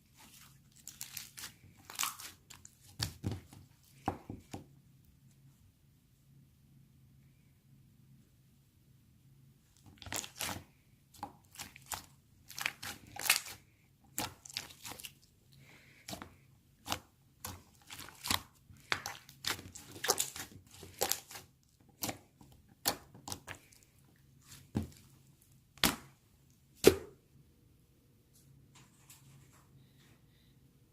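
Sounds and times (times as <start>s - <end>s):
crinkling handling noises: 0.0s - 4.6s.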